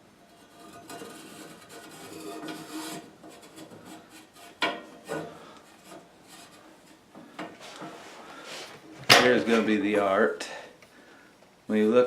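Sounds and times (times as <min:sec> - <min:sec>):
cable rubbing and scraping: 0:00.5 - 0:07.0.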